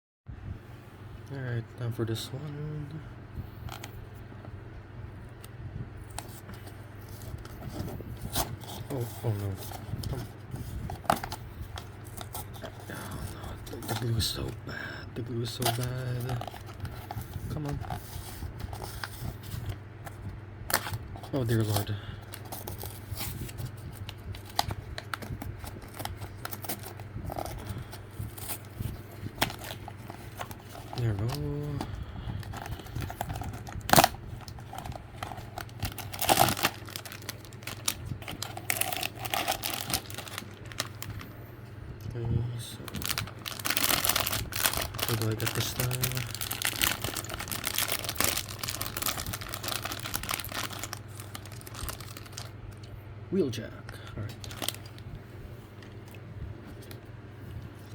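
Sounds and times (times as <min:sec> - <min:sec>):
steady low hum: 0:00.3 - 0:57.9
packaging crinkling and tearing: 0:06.1 - 0:14.7, 0:15.3 - 0:41.3, 0:42.8 - 0:52.8, 0:54.3 - 0:55.0.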